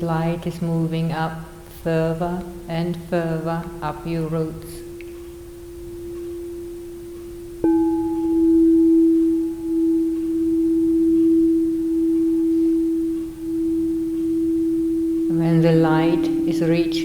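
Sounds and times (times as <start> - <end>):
singing bowl ringing: 4.1 - 17.0
singing bowl strike: 4.9 - 17.0.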